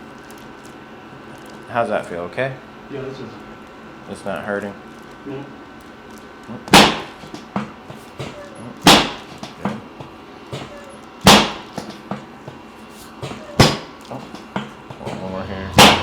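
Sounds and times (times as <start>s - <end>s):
sharp knock: 15.1s - 16.0s
drop table section slamming down: 15.5s - 16.0s.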